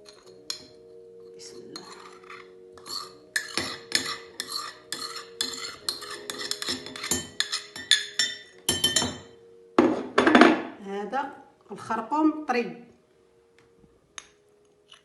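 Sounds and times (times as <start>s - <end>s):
metal utensil clinking on dish: 0.0s - 0.8s, 1.7s - 9.4s.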